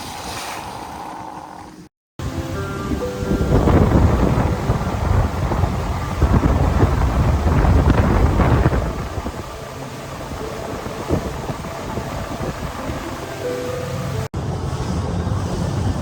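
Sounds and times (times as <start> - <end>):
rushing water: 2.2 - 14.3
wind buffeting microphone: 2.2 - 16.0.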